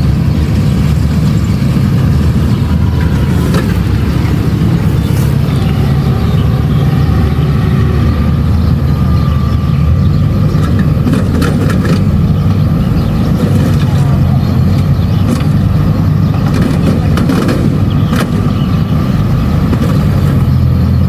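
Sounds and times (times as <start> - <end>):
combine harvester diesel engine: 0.0 - 21.0
sharp rattles or knocks: 10.5 - 21.0.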